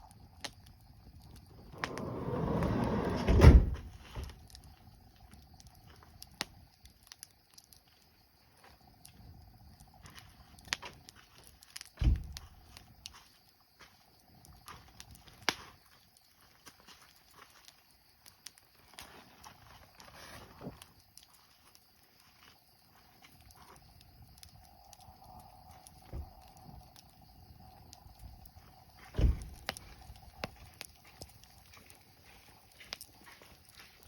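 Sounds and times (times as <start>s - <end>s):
campfire crackling: 0.0s - 3.0s, 3.6s - 34.0s
sharp pops of fire: 9.0s - 13.2s, 14.6s - 15.8s, 23.3s - 32.0s
heavy thump: 29.2s - 29.6s.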